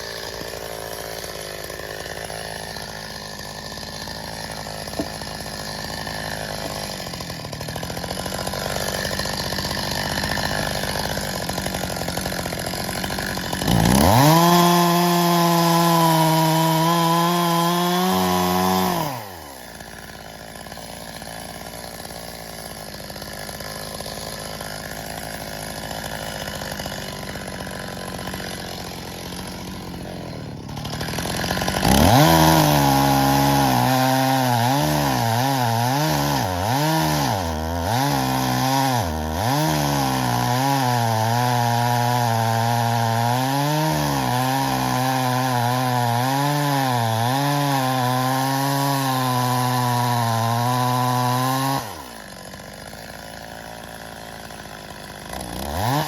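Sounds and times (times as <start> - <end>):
chainsaw cutting logs: 0.0 - 56.0.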